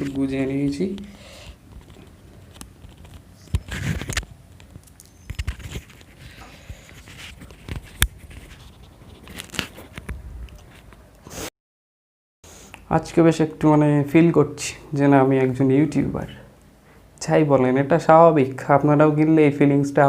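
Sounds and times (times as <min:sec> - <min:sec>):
sharp clicks and scratches: 0:00.9 - 0:11.0
clothing rustling on microphone: 0:01.6 - 0:10.9.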